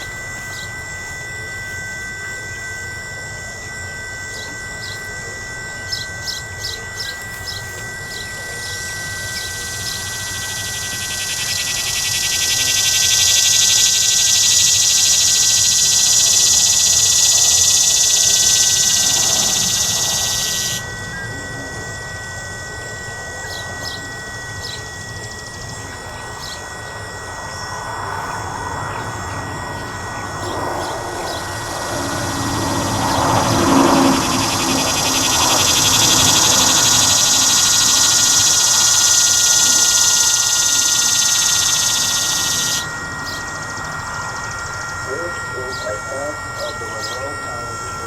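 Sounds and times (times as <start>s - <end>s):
high-pitched electronic siren tones: 0.0s - 48.0s
loud high hiss: 7.1s - 20.9s, 28.7s - 47.4s.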